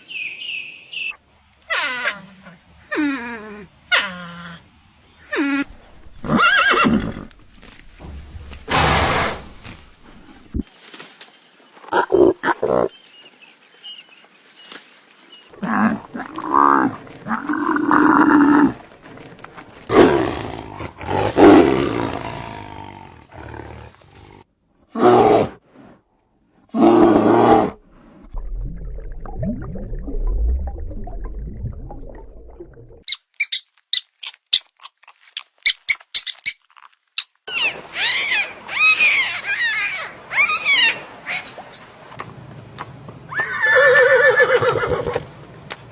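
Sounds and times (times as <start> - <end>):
animal calls and roars: 15.4 - 26.0, 26.7 - 28.4, 37.5 - 42.0.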